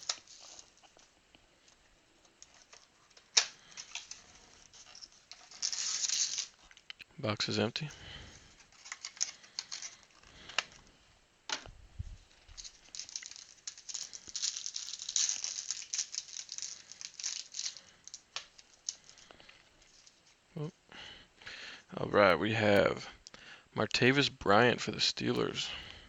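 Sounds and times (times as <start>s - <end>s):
cards shuffling: 0.0s - 1.0s, 2.4s - 6.7s, 8.6s - 10.9s, 12.3s - 20.3s
wrapper crinkling and tearing: 0.0s - 1.1s, 2.4s - 6.8s, 8.5s - 10.9s, 12.3s - 20.4s.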